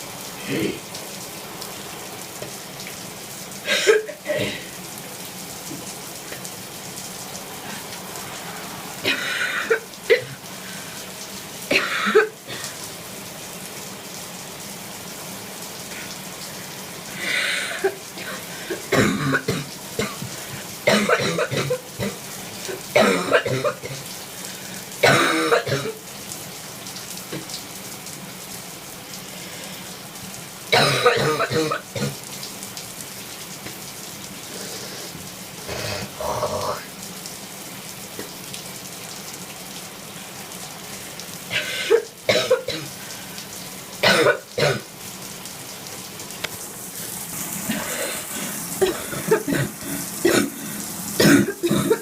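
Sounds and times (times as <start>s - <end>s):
shower running: 0.0s - 52.0s
person coughing and spitting: 0.4s - 0.8s, 3.6s - 4.7s, 9.0s - 10.4s, 11.7s - 12.7s, 17.4s - 20.3s, 20.9s - 22.2s, 22.9s - 24.0s, 25.0s - 26.0s, 30.7s - 32.2s, 41.5s - 42.9s, 44.0s - 44.8s, 47.7s - 52.0s.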